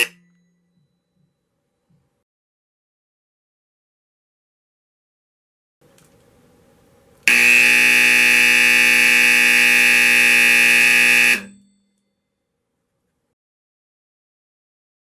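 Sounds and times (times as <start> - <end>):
fire alarm horn buzzing: 0.0 - 0.9, 7.3 - 11.8.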